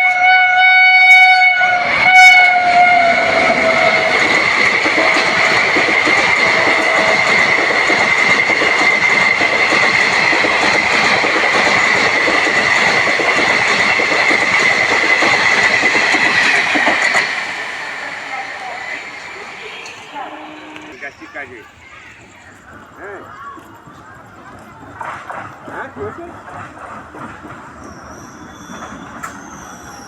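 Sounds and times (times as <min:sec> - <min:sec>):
train horn: 0:00.0 - 0:07.7, 0:17.7 - 0:21.1
train wheels rattling on rails: 0:01.7 - 0:30.0.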